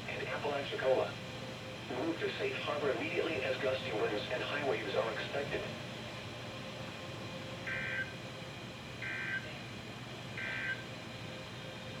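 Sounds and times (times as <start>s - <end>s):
radio hiss: 1.9s - 5.7s.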